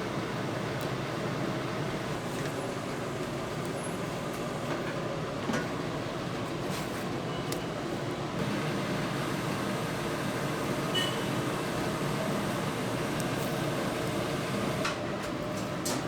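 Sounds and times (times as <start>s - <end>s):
extractor fan hum: 8.4s - 15.1s.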